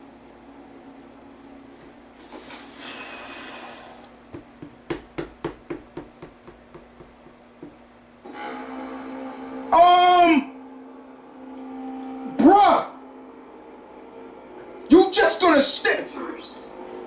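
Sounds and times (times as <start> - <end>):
faint steady hum: 0.0 - 17.0
rushing hiss: 2.2 - 4.0
sharp knocks: 4.3 - 7.8.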